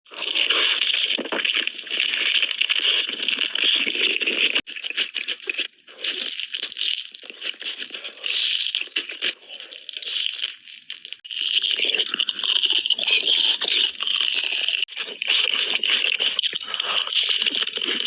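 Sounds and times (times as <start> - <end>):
crunching fried chicken: 0.1 - 18.0.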